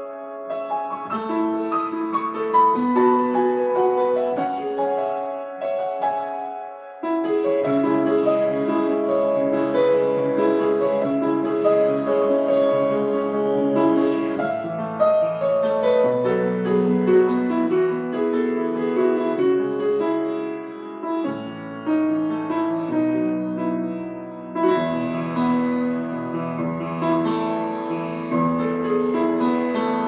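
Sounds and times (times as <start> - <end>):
solo piano piece: 0.0 - 30.0.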